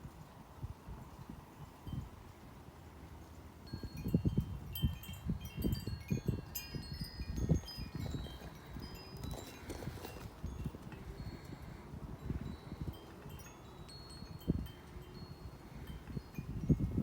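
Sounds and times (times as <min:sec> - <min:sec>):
wind chimes tinkling: 0:03.5 - 0:17.0
wind buffeting microphone: 0:03.6 - 0:17.0.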